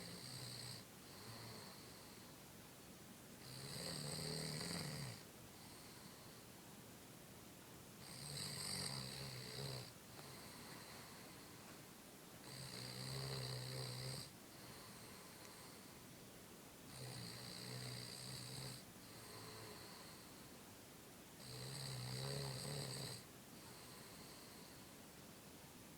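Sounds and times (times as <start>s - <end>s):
quiet breaths: 0.0s - 2.8s, 3.4s - 7.0s, 8.0s - 25.9s
rattling snores: 3.4s - 5.2s, 8.0s - 9.9s, 12.4s - 14.3s, 16.9s - 20.2s, 21.4s - 23.2s.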